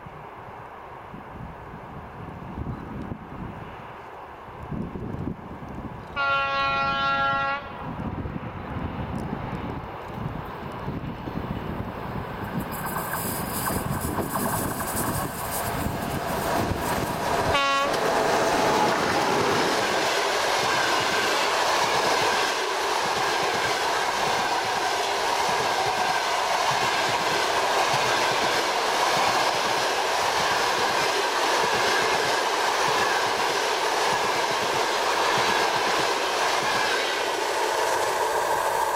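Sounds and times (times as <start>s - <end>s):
train rolling rumble: 7.8s - 38.9s.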